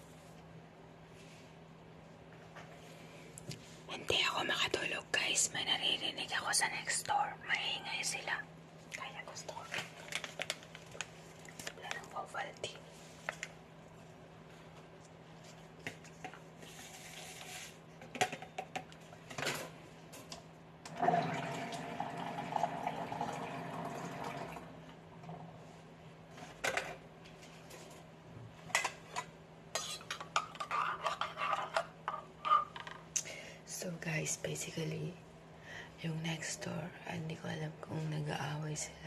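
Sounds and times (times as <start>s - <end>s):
faint low hum: 0.0s - 17.0s
running water: 20.9s - 24.8s.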